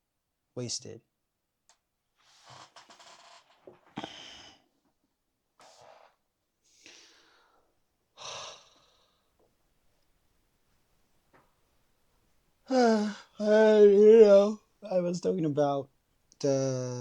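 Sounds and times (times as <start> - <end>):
person breathing and sighing: 3.9 - 4.7, 6.8 - 9.2, 12.7 - 14.0.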